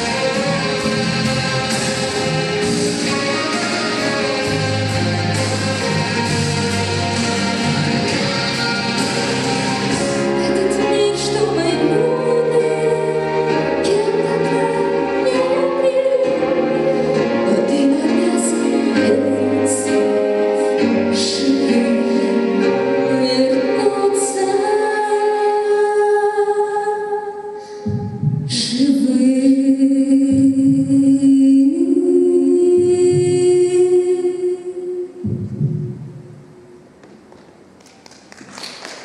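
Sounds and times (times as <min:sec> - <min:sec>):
musical backing: 0:00.0 - 0:39.0
woman singing long notes: 0:23.1 - 0:35.2.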